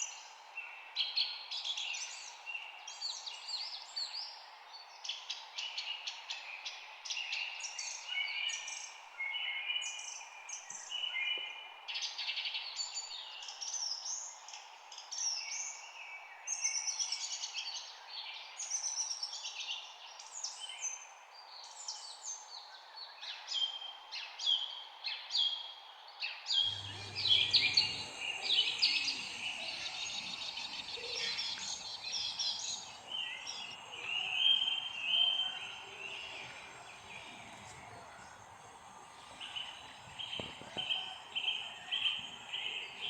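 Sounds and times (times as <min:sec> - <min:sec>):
birds chirping and singing: 0:26.6 - 0:43.0
low hum: 0:26.6 - 0:43.0
steady background hiss: 0:26.6 - 0:43.0.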